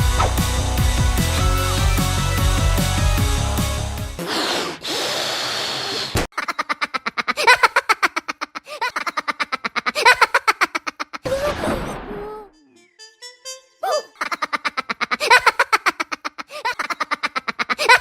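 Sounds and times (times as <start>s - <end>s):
music: 0.0s - 4.2s, 12.5s - 14.2s
fast high cartoon laugh: 6.3s - 11.8s, 13.8s - 18.0s.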